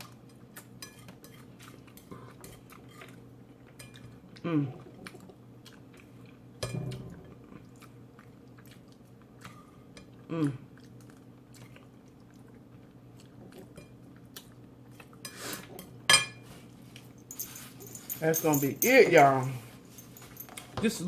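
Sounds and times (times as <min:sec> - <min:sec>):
chewing food: 0:00.0 - 0:15.9
person humming: 0:04.4 - 0:04.8, 0:10.3 - 0:10.6.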